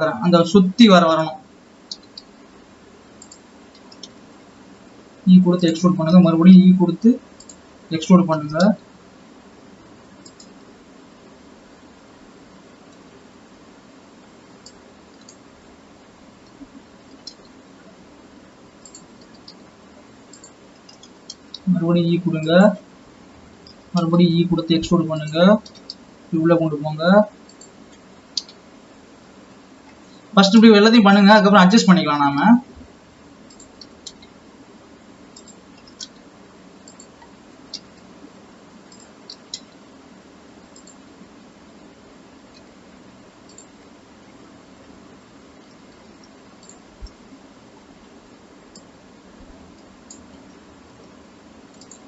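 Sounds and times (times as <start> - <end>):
low background hum: 0.0 - 52.0
microphone hiss: 0.0 - 52.0
keyboard and mouse clicks: 1.9 - 2.3, 3.2 - 4.2, 7.4 - 7.6, 10.2 - 10.6, 14.6 - 15.4, 16.4 - 17.6, 18.8 - 19.6, 20.3 - 21.8, 24.8 - 26.0, 27.5 - 28.6, 33.5 - 34.4, 35.3 - 38.1, 38.9 - 39.8, 40.7 - 41.0, 42.5 - 42.7, 43.5 - 43.8, 45.6 - 47.2, 48.7 - 50.6, 51.7 - 52.0
mouse and keyboard clicks: 1.9 - 2.3, 16.5 - 17.6, 18.8 - 19.6, 20.3 - 21.7, 25.3 - 26.0, 27.5 - 28.6, 35.4 - 36.2, 36.8 - 38.1, 38.9 - 39.8, 51.7 - 52.0.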